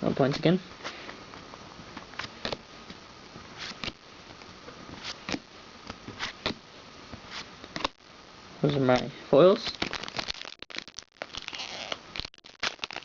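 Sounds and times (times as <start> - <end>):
trading cards clicking and rustling: 9.7 - 13.0.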